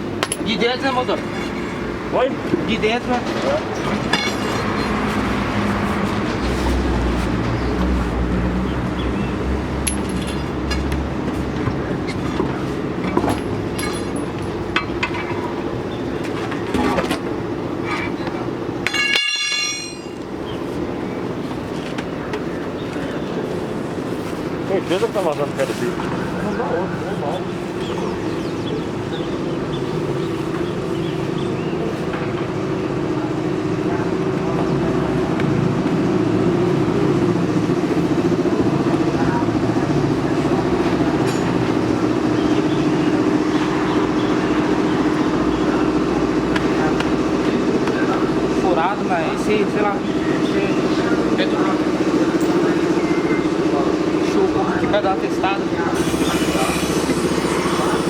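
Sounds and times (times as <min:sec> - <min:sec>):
large engine idling: 0:00.0 - 0:58.0
metallic clinks and taps: 0:00.2 - 0:00.6, 0:18.8 - 0:20.3
high-pitched whine: 0:55.8 - 0:58.0.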